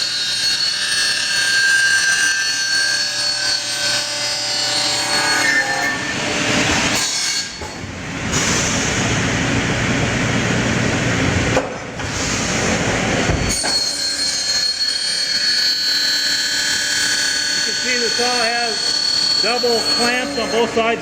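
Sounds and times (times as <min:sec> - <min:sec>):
saw blade cutting metal screech: 0:00.0 - 0:06.2, 0:13.5 - 0:21.0
saw blade spinning whine: 0:13.5 - 0:21.0.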